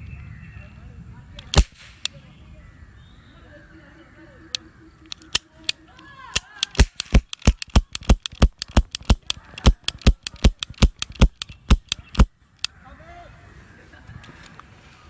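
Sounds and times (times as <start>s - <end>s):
toy cap gun firing: 1.4s - 2.2s, 4.6s - 12.7s.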